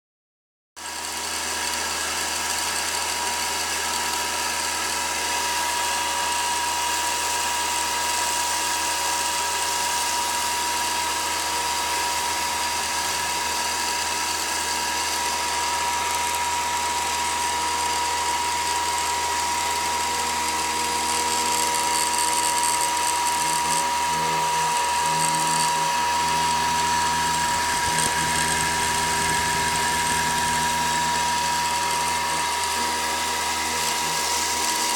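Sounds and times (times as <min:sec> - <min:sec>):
machine spindle whining: 0:08.4 - 0:34.9.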